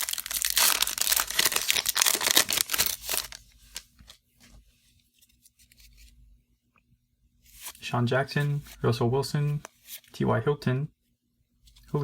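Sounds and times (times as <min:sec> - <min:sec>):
card pack wrapper crinkling: 0:00.0 - 0:04.2.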